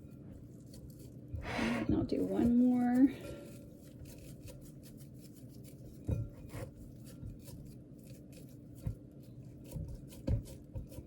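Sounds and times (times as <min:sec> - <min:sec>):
hands rubbing dough: 0:00.0 - 0:11.0
dough thud: 0:08.8 - 0:11.0.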